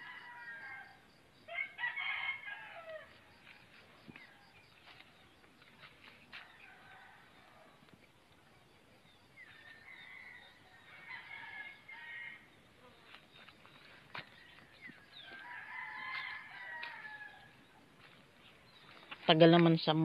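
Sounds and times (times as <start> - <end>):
rooster crowing: 0.0 - 3.2, 9.6 - 12.5, 14.5 - 17.6.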